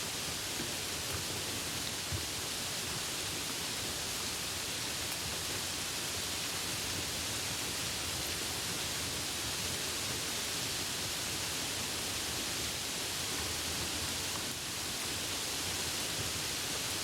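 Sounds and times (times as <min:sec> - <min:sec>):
steady rainfall: 0:00.0 - 0:17.0.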